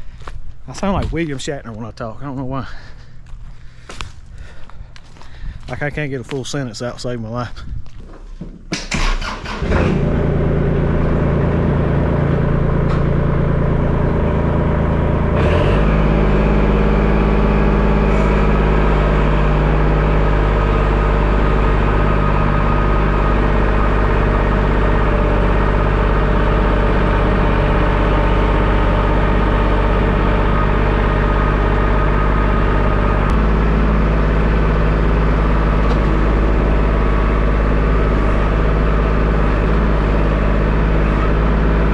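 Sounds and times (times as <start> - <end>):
engine running loudly: 8.9 - 41.9.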